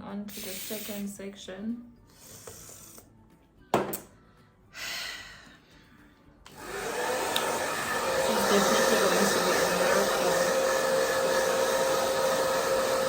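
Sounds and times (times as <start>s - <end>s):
hair dryer blowing: 6.5s - 13.0s.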